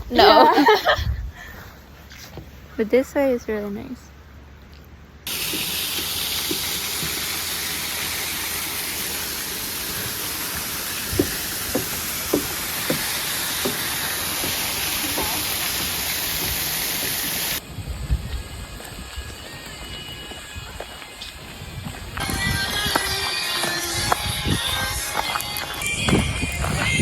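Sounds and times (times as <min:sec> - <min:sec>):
waterfall rushing: 0:05.3 - 0:17.6, 0:22.2 - 0:26.1
soft knocks: 0:11.1 - 0:13.9.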